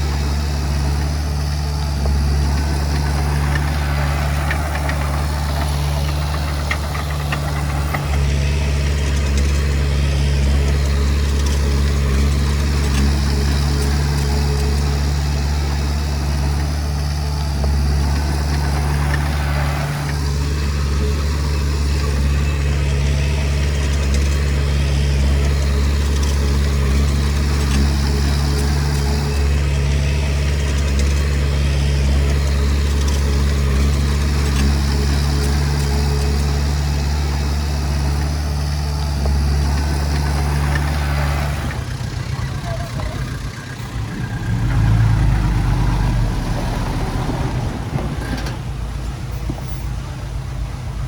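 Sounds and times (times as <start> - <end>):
bulldozer diesel engine running: 0.0 - 51.0.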